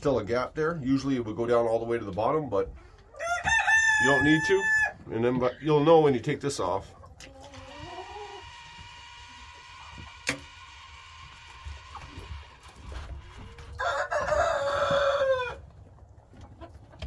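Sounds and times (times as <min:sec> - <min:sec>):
rooster crowing: 0:03.2 - 0:05.0, 0:13.7 - 0:15.6
sharp click: 0:10.2 - 0:10.5.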